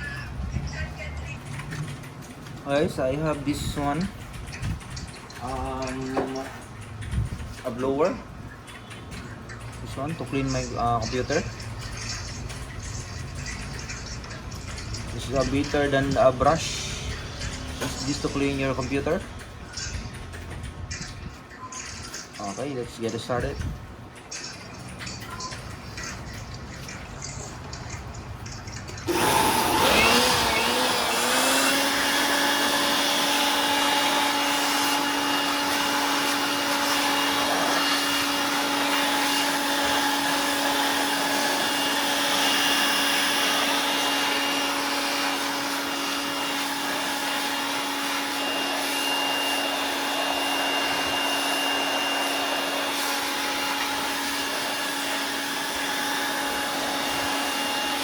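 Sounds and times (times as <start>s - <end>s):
electric air blower running: 15.1s - 19.5s, 29.1s - 58.0s.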